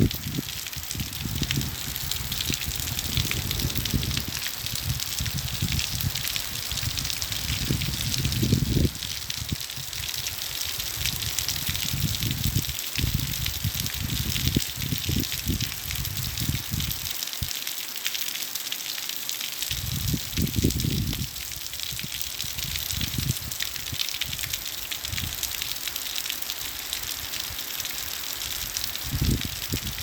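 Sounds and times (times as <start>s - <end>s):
heavy rain: 0.0s - 30.0s
low rumbles: 1.0s - 9.0s.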